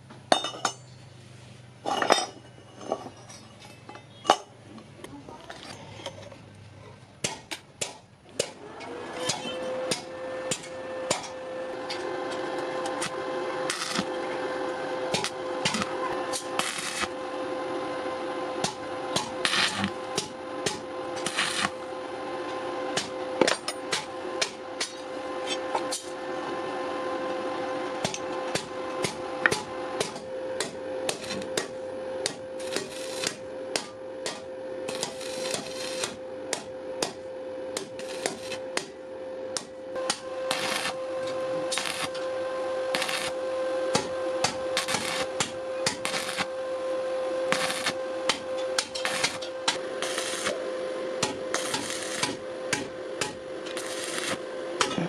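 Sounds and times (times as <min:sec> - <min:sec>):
hammer striking metal on anvil: 0:09.2 - 0:12.0, 0:28.0 - 0:37.2, 0:37.8 - 0:39.0, 0:39.6 - 0:40.9, 0:43.9 - 0:46.4, 0:51.2 - 0:53.4
steady hum: 0:09.2 - 0:55.0.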